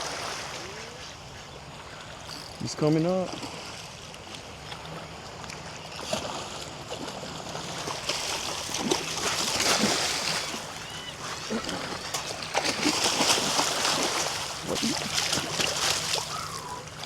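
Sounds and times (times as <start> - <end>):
fish splashing at water surface: 6.0 - 16.9.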